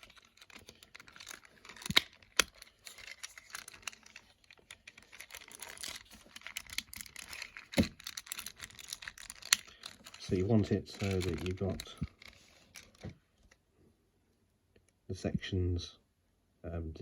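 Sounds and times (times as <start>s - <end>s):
plastic parts clicking and scraping: 0.0s - 13.6s.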